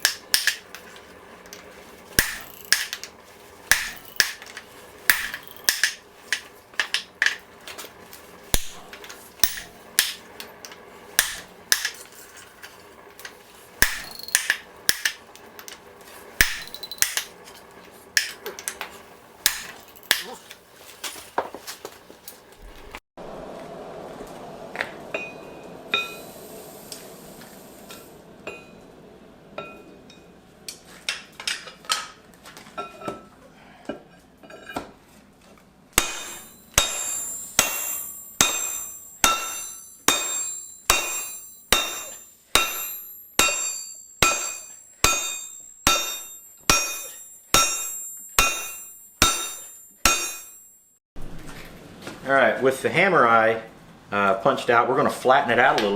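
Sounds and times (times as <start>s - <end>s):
hammer striking steel on anvil: 0.0s - 7.5s, 8.5s - 15.8s, 16.4s - 17.4s, 18.2s - 18.8s, 19.4s - 20.5s, 25.1s - 26.3s, 36.0s - 50.8s.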